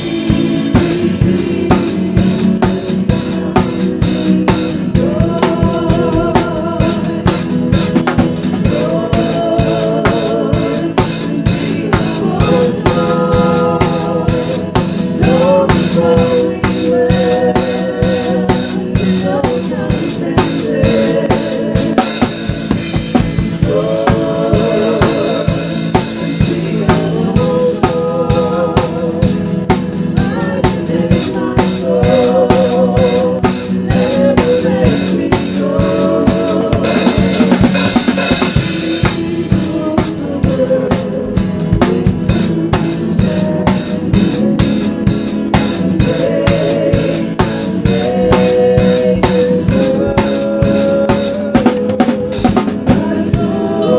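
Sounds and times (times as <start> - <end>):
drum kit beat: 0.0 - 53.9
person singing with vibrato: 0.0 - 53.9.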